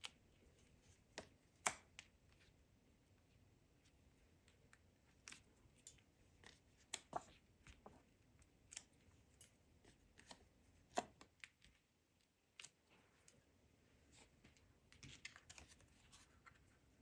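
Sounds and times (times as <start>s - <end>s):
faint clicks of craft tools: 4.3s - 16.8s.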